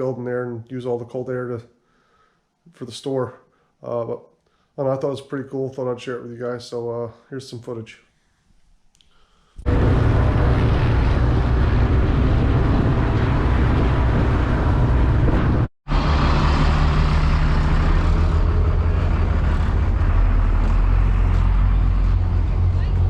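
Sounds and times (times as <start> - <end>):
engine running steadily: 9.7 - 23.0.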